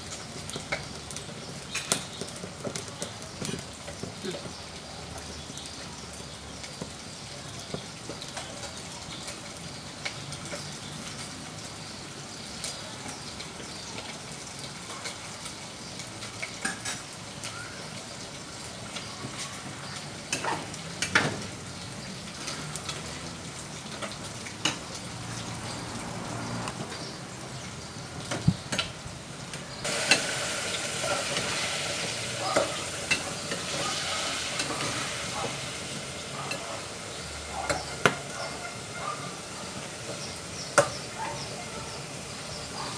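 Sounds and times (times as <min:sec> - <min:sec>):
fire crackling and popping: 0:27.8 - 0:38.5
fire hissing: 0:29.0 - 0:42.9.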